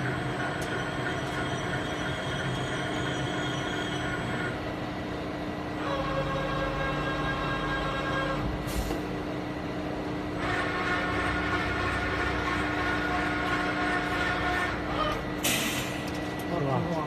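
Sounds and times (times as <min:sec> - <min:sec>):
whirring tones: 0:00.0 - 0:04.7
machining center humming: 0:00.0 - 0:17.0.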